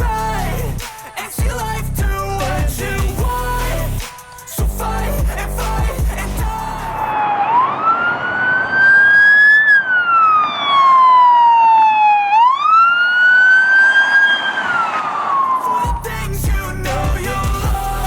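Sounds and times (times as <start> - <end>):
music: 0.0 - 7.1, 15.8 - 18.0
emergency siren wailing: 6.6 - 16.1.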